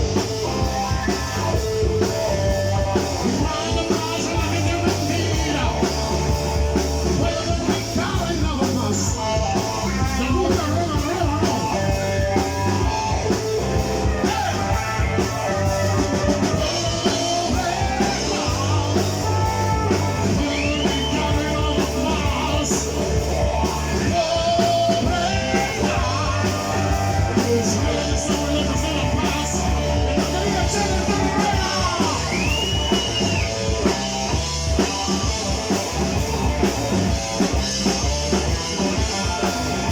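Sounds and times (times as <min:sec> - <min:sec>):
blues-rock band playing: 0:00.0 - 0:39.9
person singing: 0:14.1 - 0:33.2.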